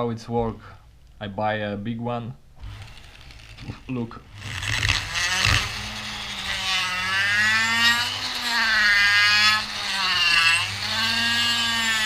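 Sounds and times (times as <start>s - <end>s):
grinder motor running: 2.6s - 12.0s.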